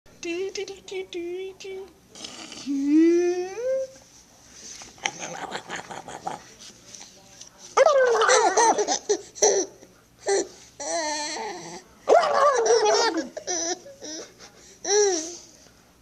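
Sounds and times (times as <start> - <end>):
baby laughing and giggling: 12.5 - 14.3.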